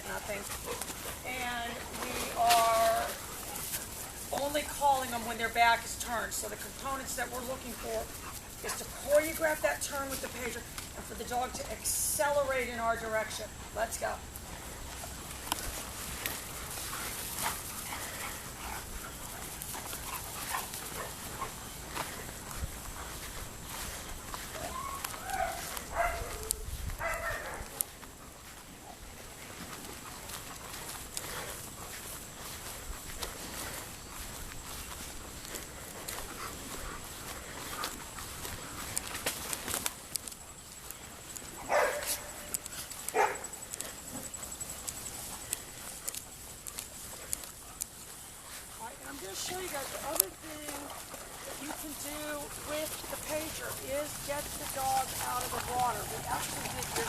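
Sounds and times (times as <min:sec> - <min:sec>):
dog barking: 0:25.3 - 0:27.6, 0:41.7 - 0:42.2, 0:43.1 - 0:43.4.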